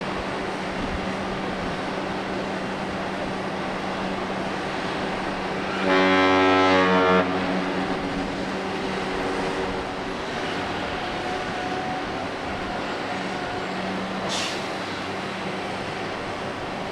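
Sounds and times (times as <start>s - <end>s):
ship's horn blast: 5.5s - 13.7s.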